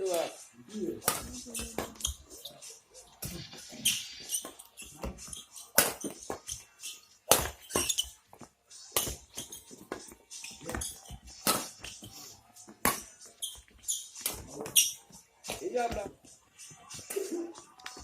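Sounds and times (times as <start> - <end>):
shoe squeaks: 0.1 - 18.0
rackets hitting shuttlecock: 0.8 - 2.6, 3.2 - 8.1, 8.9 - 12.1, 12.7 - 13.2, 13.8 - 16.1, 16.9 - 18.0.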